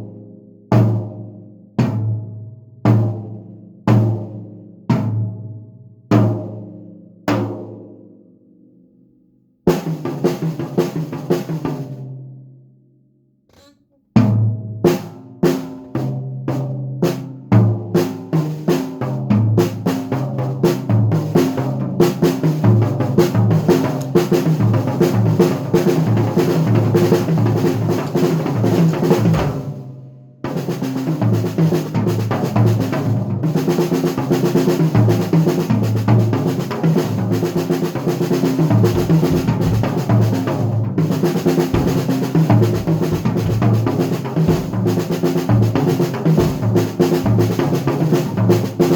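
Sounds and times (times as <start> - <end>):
drum playing: 23.6 - 30.0, 35.9 - 48.9.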